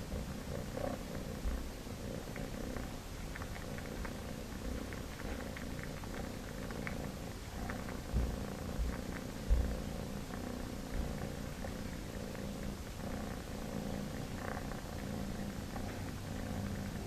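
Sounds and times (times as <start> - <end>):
cat purring: 0.0 - 17.0.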